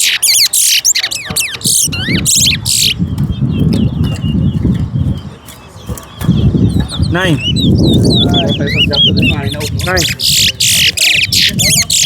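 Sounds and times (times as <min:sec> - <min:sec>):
finch warbling song: 0:00.0 - 0:12.0
low voices murmuring: 0:01.3 - 0:12.0.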